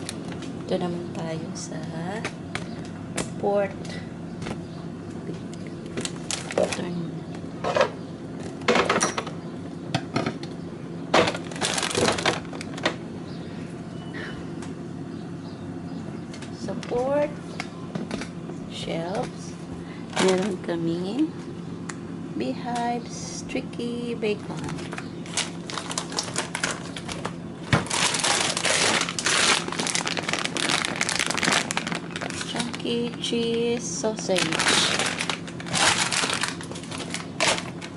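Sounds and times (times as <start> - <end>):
steady low hum: 0.0 - 37.9
food packaging crinkling: 5.8 - 6.9, 11.2 - 12.9, 24.6 - 37.9.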